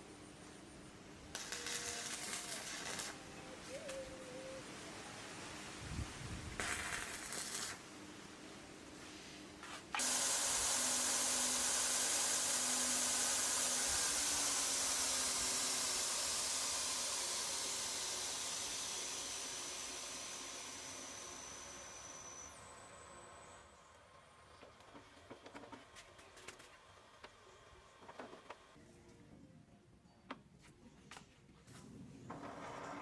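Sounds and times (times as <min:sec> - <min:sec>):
loud hiss: 0:01.3 - 0:04.6, 0:06.4 - 0:07.8, 0:09.9 - 0:22.7.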